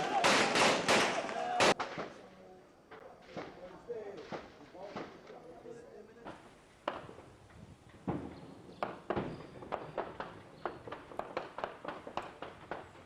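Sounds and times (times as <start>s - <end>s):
rifle fire: 0.1s - 2.2s.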